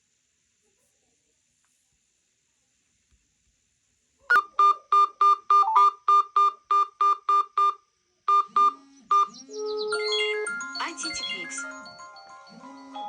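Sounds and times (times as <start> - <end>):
phone alarm beeping: 4.3 - 13.0.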